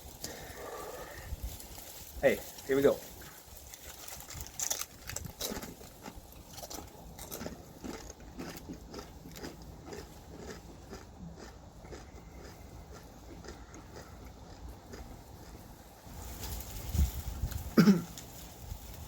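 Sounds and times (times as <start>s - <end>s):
chip crunching and chewing: 0.1s - 16.8s.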